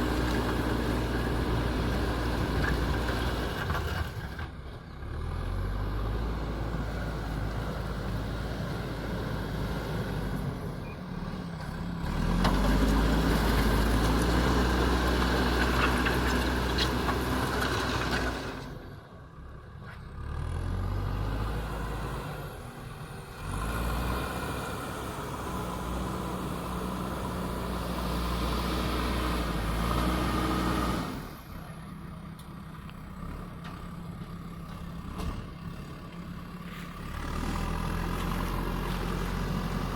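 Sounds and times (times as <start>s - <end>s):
diesel engine revving: 0.0s - 19.0s, 20.1s - 39.9s.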